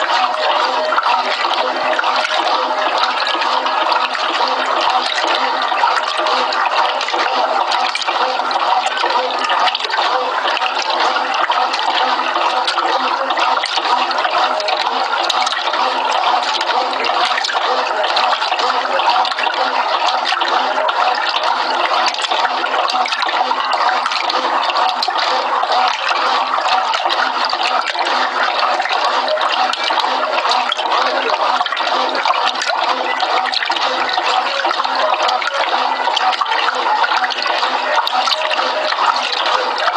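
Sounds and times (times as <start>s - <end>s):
washing machine churning water: 0.0s - 39.9s.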